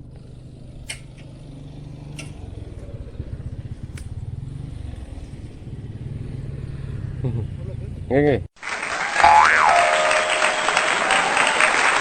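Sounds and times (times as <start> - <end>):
engine humming: 0.0 - 12.0
sharp clicks: 0.8 - 1.3, 2.1 - 2.4, 3.9 - 4.2.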